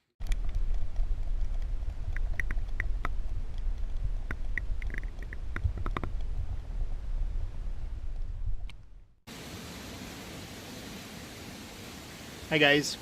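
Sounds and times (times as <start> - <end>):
wind rumbling on microphone: 0.2 - 9.2.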